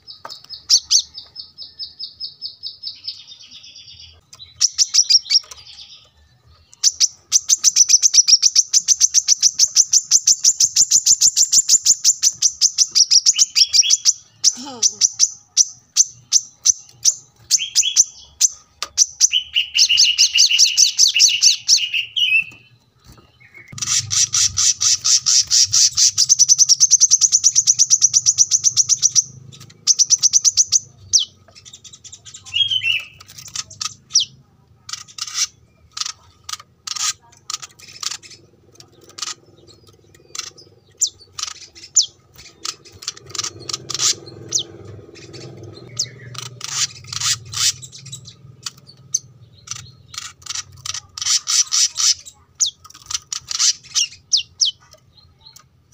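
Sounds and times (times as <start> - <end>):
bird chirping and trilling: 0.0 - 55.9.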